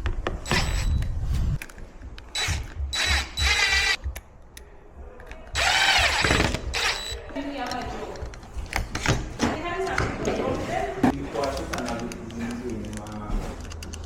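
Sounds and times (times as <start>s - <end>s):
power drill driving screws: 2.3s - 4.0s, 5.6s - 7.2s.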